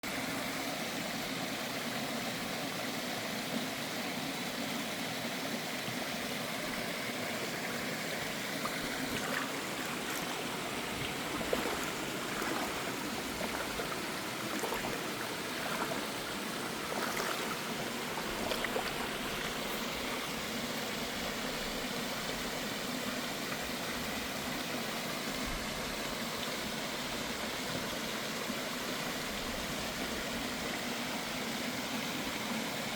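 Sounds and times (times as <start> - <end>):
stream water rushing over rocks: 0.0 - 32.9.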